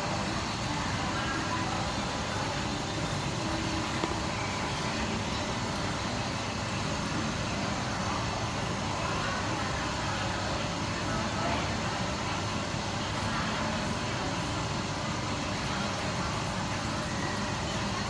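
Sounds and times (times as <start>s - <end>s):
faint distant voices: 0.0s - 18.0s
steady background rumble and hiss: 0.0s - 18.0s.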